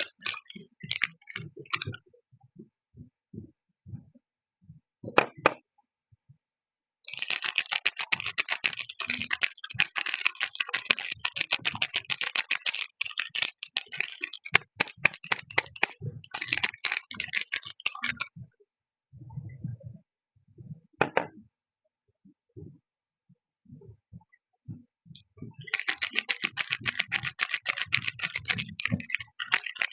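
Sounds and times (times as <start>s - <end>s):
wrapper crinkling: 7.1s - 18.2s, 25.7s - 29.9s.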